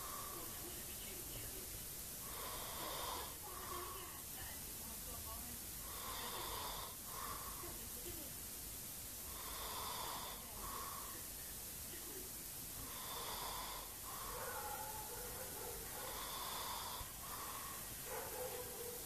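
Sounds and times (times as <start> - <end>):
man snoring: 0.0 - 0.5, 2.2 - 4.0, 5.8 - 7.6, 9.3 - 11.2, 12.8 - 14.4, 16.0 - 17.8.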